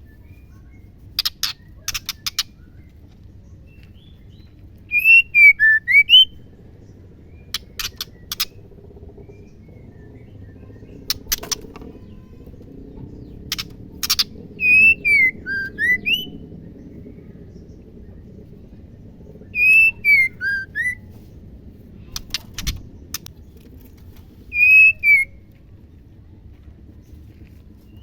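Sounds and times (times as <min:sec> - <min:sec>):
bird whistling gliding notes: 0:03.7 - 0:12.3, 0:13.1 - 0:21.1, 0:24.5 - 0:25.4
sharp clicks: 0:22.1 - 0:24.3.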